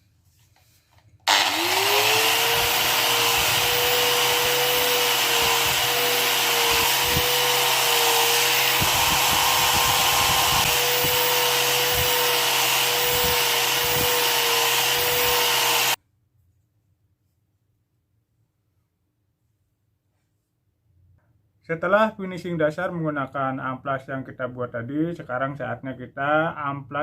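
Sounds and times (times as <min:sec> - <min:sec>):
electric grinder whining: 0:01.3 - 0:16.0.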